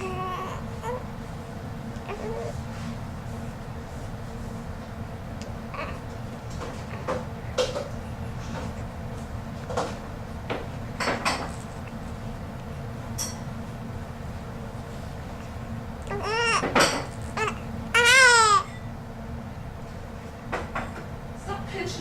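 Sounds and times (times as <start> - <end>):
steady low hum: 0.0 - 22.0
dishes clinking: 13.2 - 13.5, 16.6 - 17.1.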